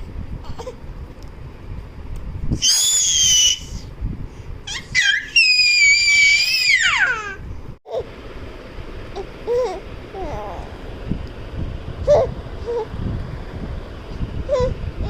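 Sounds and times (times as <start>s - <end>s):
baby squealing: 2.6s - 3.8s, 4.7s - 7.4s.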